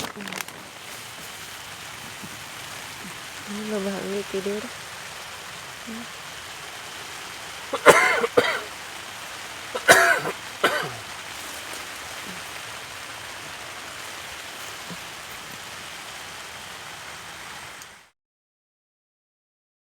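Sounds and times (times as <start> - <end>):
rain falling: 0.0 - 18.1
person coughing: 7.7 - 8.7, 9.8 - 11.0.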